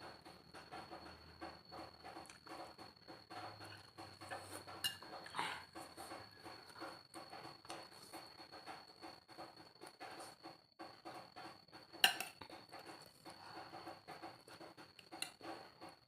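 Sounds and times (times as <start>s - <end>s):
cutlery clinking on bowl: 3.6s - 5.3s, 12.0s - 12.4s.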